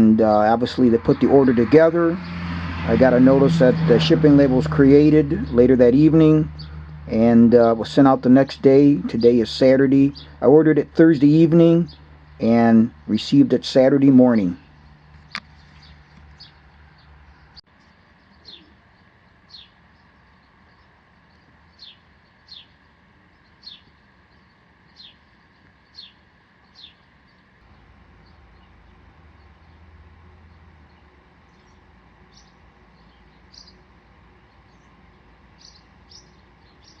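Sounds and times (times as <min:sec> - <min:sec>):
faint bird chirping: 0:08.6 - 0:13.2, 0:14.3 - 0:37.0.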